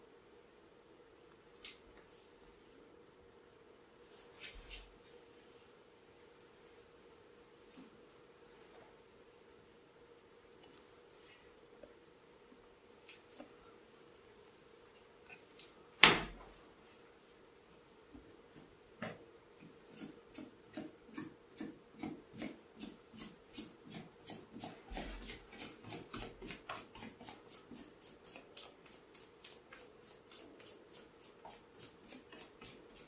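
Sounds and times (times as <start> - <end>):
rhythmic massage rubbing: 19.5 - 33.0.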